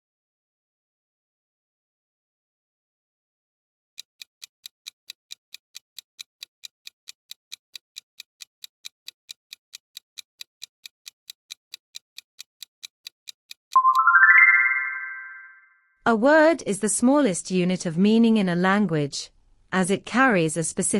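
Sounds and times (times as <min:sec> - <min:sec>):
countdown timer ticking: 0:04.0 - 0:15.5
loud bright chime: 0:13.8 - 0:15.7.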